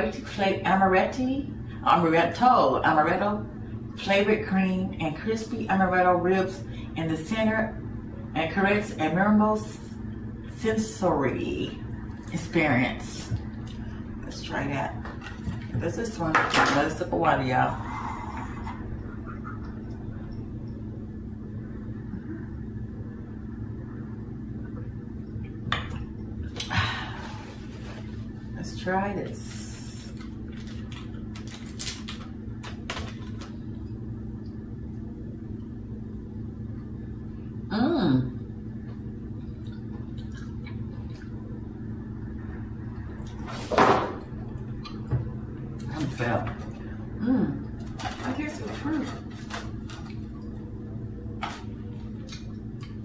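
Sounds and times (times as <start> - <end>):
low room hum: 0.0 - 53.0
person chewing: 39.4 - 41.4.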